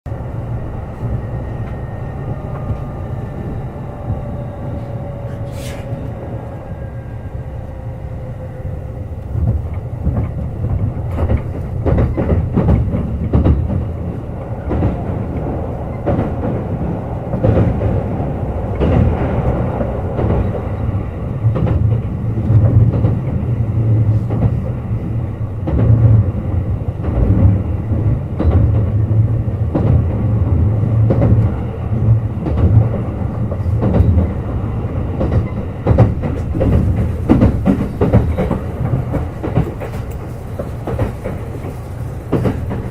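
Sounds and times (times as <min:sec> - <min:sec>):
train rumble: 0:00.0 - 0:42.9
wheels clacking over rail joints: 0:09.2 - 0:42.9.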